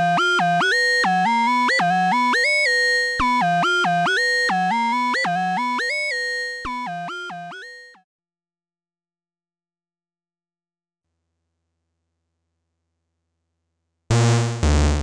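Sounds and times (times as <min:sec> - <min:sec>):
synthesizer stepped note sequence: 0:14.1 - 0:15.0.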